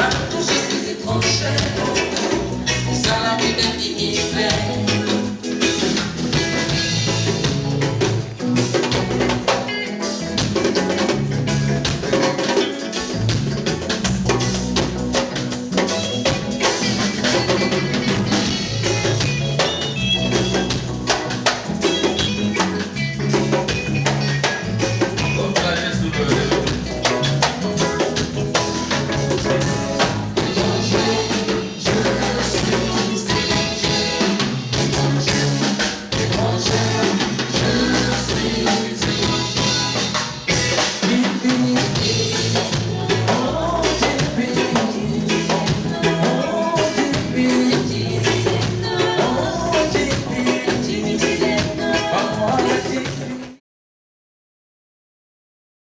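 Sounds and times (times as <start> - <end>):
person singing: 0.0 - 5.8, 29.3 - 53.6
drum kit beat: 0.0 - 53.6
live band playing: 0.0 - 53.6.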